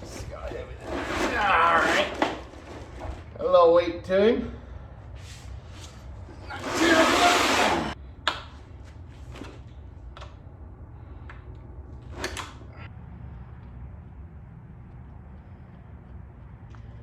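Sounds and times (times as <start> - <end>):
loud rustling scrape: 0.0 - 3.4, 5.2 - 8.0.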